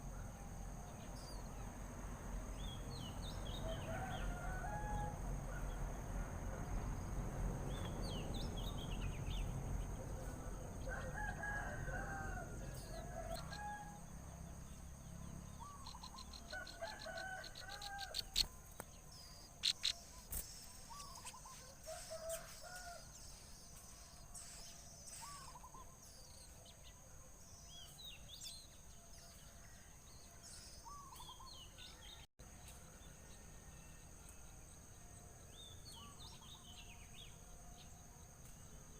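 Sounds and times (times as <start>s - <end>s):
birds chirping and calling: 14.8s - 26.6s, 30.5s - 31.8s.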